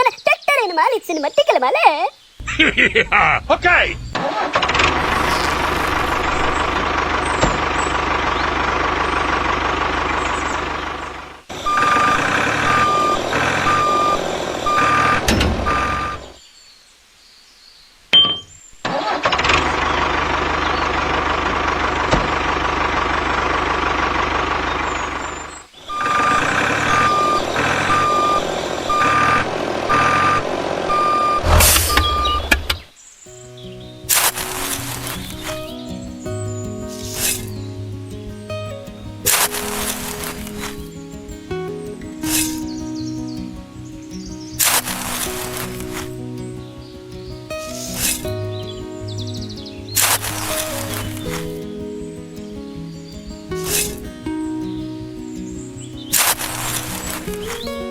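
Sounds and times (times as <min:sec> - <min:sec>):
truck engine running: 0:02.4 - 0:16.4, 0:18.9 - 0:57.9
reversing alarm beeping: 0:11.6 - 0:16.4, 0:25.9 - 0:32.7.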